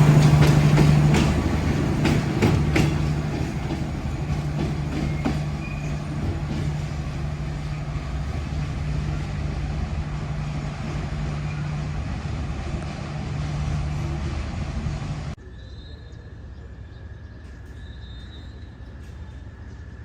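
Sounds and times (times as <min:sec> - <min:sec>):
train rumbling: 0:00.0 - 0:15.5
diesel locomotive engine hum: 0:00.0 - 0:20.0.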